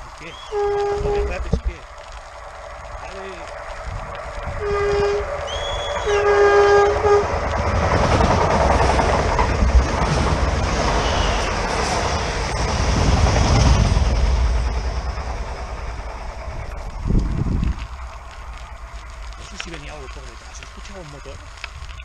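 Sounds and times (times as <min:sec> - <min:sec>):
train passing with rush of air: 0:00.0 - 0:22.0
train horn blasts: 0:00.3 - 0:01.5, 0:04.6 - 0:07.3.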